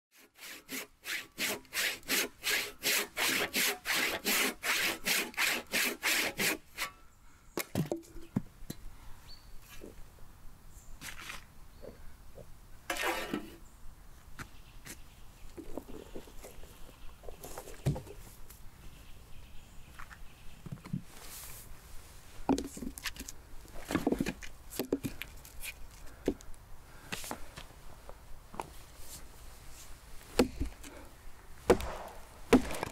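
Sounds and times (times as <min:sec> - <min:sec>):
hand saw cutting wood: 0:00.1 - 0:07.0, 0:12.9 - 0:13.6
sharp knocks: 0:31.7 - 0:32.9
sticks and twigs snapping and rustling: 0:31.7 - 0:32.9.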